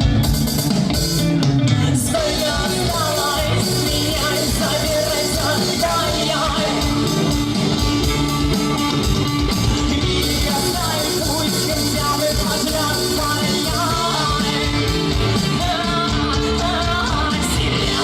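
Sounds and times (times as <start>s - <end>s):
rock band playing live: 0.0s - 18.0s
person singing: 1.6s - 7.7s, 9.8s - 18.0s.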